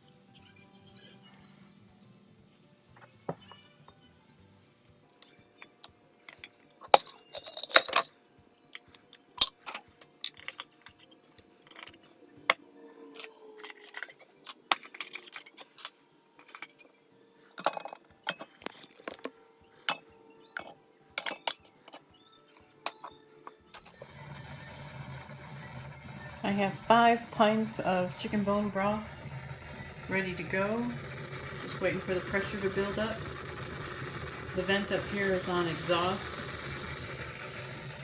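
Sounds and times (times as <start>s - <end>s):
glass jars clinking together: 5.2s - 12.1s, 13.1s - 16.9s, 17.5s - 24.0s.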